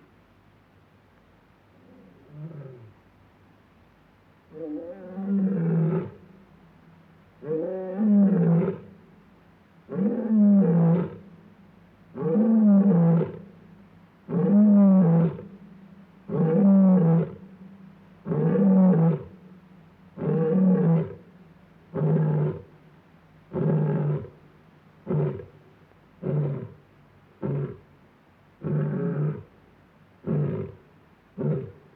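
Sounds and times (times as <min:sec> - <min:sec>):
lion roaring: 0:28.6 - 0:29.5, 0:31.4 - 0:31.8.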